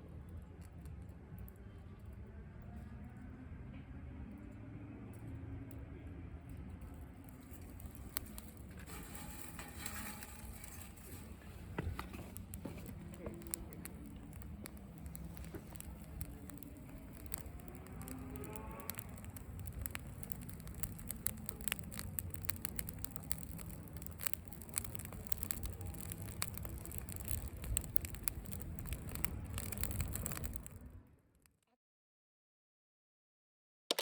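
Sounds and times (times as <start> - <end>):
low rush of flame: 5.1 - 31.1
twigs crackling and popping: 6.8 - 31.6.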